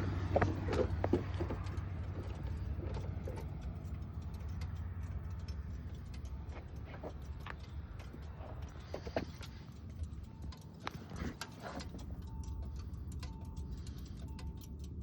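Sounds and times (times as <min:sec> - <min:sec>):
car engine drone: 0:00.0 - 0:15.0
engine ticking knock: 0:00.0 - 0:15.0.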